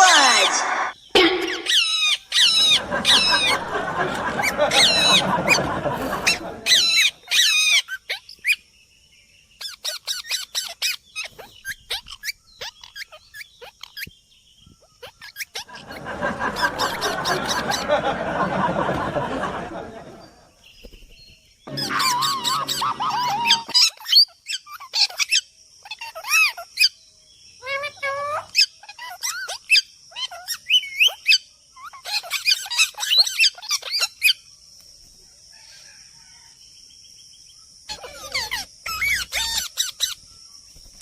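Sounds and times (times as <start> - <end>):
parrots squawking and chattering: 0.0 - 8.6, 9.6 - 14.1, 14.8 - 20.5, 21.7 - 27.0, 27.6 - 34.4, 37.9 - 40.2
wavering shrill calls: 0.0 - 8.6, 14.8 - 19.8, 21.7 - 27.0, 37.9 - 40.2.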